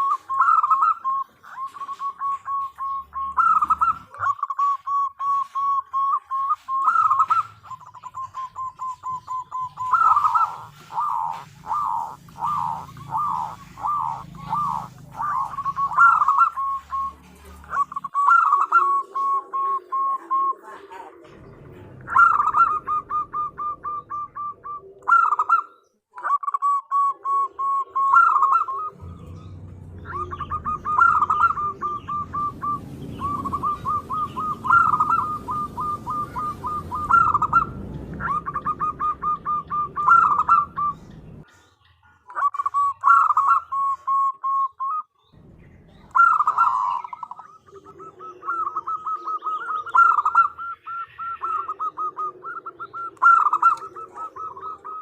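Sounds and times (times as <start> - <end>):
dove cooing: 0.0 - 55.0
low background rumble: 21.3 - 24.9, 28.9 - 41.5, 45.4 - 47.7.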